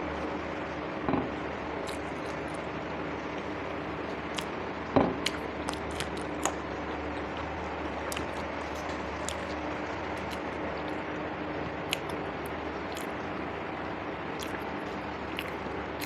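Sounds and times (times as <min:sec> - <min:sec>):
steady background hiss: 0:00.0 - 0:16.0
eating clicks and mouth noises: 0:01.8 - 0:02.7, 0:03.9 - 0:04.5, 0:05.1 - 0:16.0.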